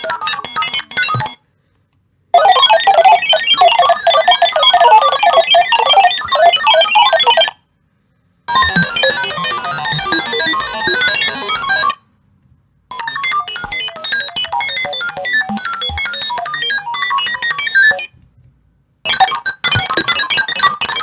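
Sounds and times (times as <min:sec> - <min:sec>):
rapid computer beeps: 0:02.4 - 0:07.5, 0:08.5 - 0:12.0, 0:12.9 - 0:18.1, 0:19.1 - 0:21.0.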